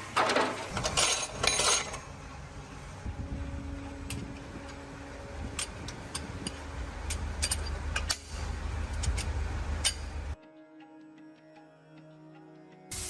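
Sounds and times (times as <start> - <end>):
steady low rumble: 2.0 - 10.4
metallic clicks of hand tools: 5.5 - 10.2.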